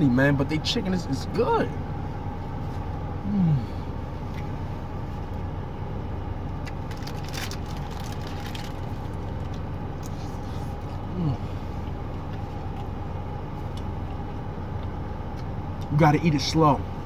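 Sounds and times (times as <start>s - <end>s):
motor vehicle hum: 0.0s - 17.0s
man humming: 3.2s - 3.9s, 11.1s - 11.6s.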